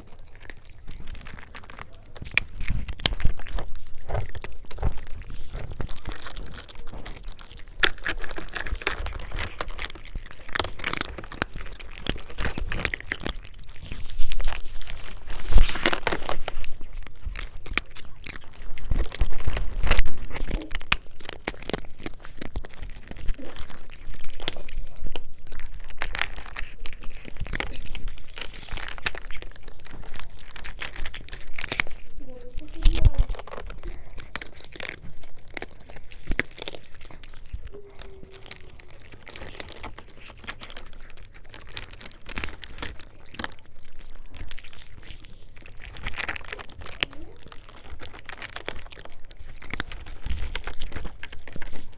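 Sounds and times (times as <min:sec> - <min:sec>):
cats crunching food: 0:00.0 - 0:51.9.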